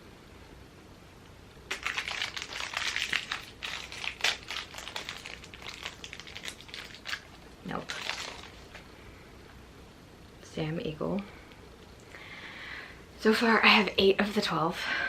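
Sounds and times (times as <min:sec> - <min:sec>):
packaging crinkling and tearing: 0:01.7 - 0:08.9.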